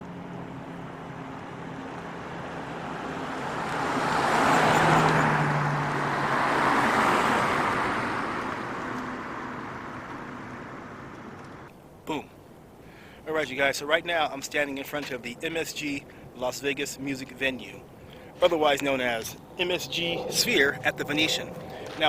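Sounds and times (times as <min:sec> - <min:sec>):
road traffic passing: 0:00.0 - 0:13.3, 0:14.3 - 0:22.0.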